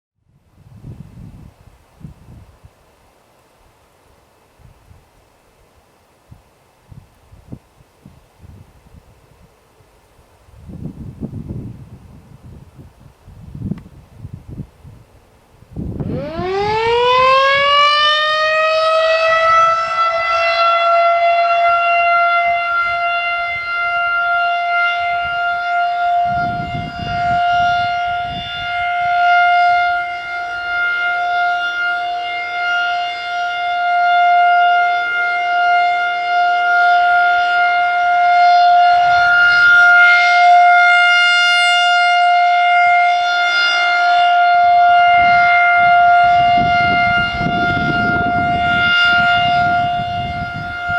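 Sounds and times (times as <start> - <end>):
warning siren alert tone: 16.0 - 50.9.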